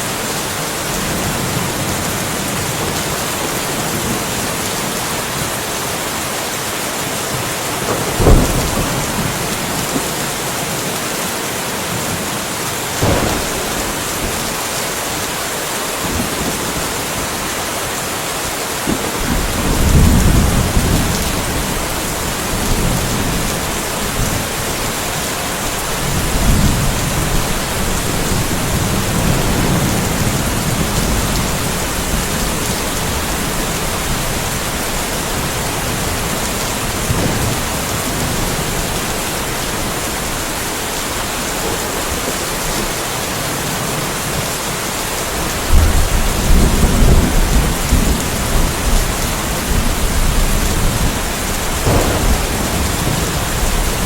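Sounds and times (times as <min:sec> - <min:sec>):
steady rain: 0:00.0 - 0:54.0
rolling thunder rumbles: 0:07.3 - 0:10.8, 0:12.9 - 0:17.5, 0:18.9 - 0:43.0, 0:45.6 - 0:54.0
thunderclap: 0:07.8 - 0:10.8, 0:12.9 - 0:15.4, 0:18.9 - 0:40.3, 0:45.7 - 0:54.0.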